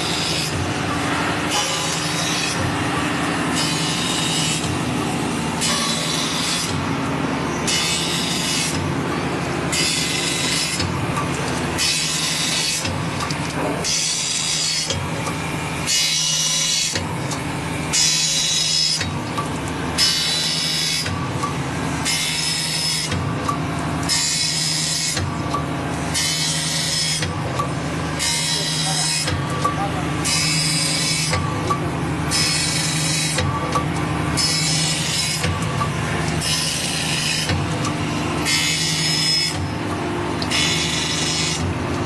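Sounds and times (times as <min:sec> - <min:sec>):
motor hum: 0:00.0 - 0:42.0.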